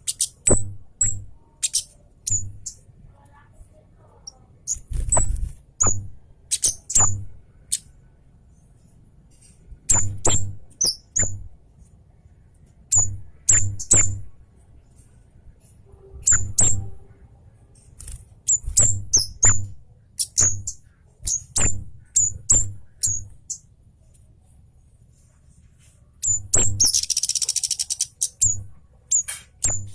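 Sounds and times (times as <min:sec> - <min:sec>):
bird high-pitched chip calls: 0:00.0 - 0:02.8, 0:04.7 - 0:07.8, 0:09.9 - 0:11.3, 0:20.2 - 0:23.6, 0:26.2 - 0:29.9.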